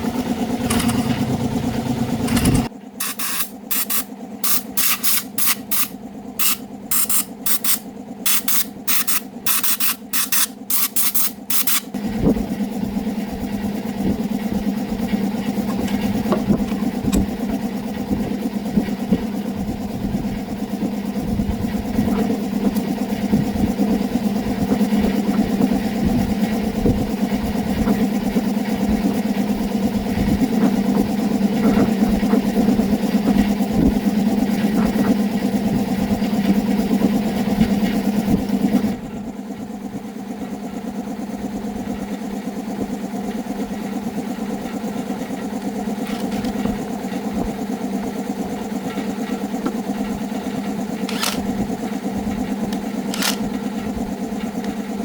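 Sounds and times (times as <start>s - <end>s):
motorbike engine running: 0.0s - 29.2s, 44.4s - 55.0s.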